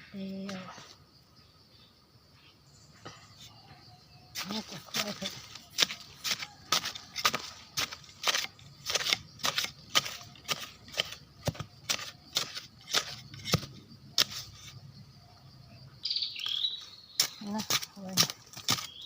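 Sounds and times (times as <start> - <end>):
footsteps crunching on leaf litter: 4.4 - 8.5, 16.5 - 19.0
high chirping trill: 16.0 - 17.4.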